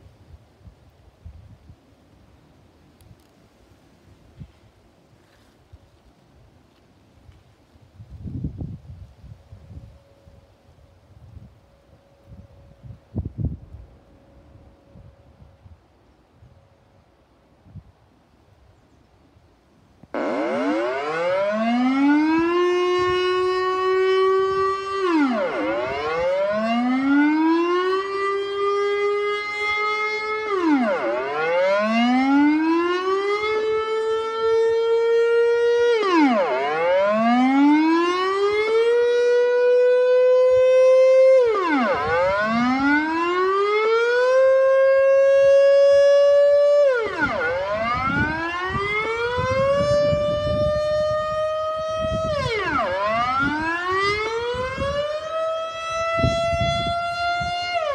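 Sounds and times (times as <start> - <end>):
air raid siren wailing: 20.1 - 57.9.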